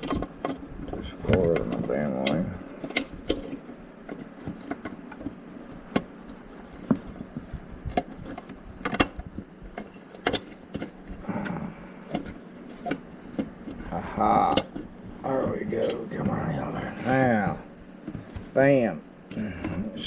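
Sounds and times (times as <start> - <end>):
plastic and metal parts rattling: 0.0 - 11.5.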